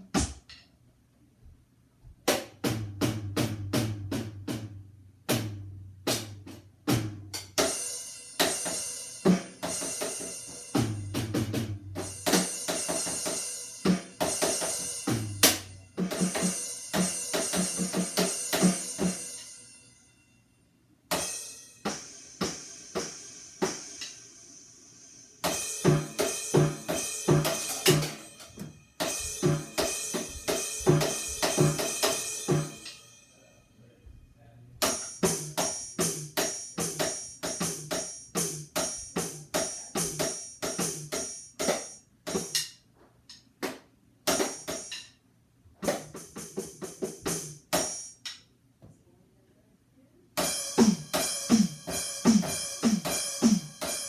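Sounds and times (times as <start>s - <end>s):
drums played in fast strokes: 2.3s - 19.4s, 21.1s - 24.8s, 25.4s - 33.1s, 34.8s - 42.6s, 44.3s - 45.0s, 45.8s - 48.1s, 50.4s - 54.0s
bright cymbal-like jingling: 12.1s - 30.8s, 31.6s - 33.9s.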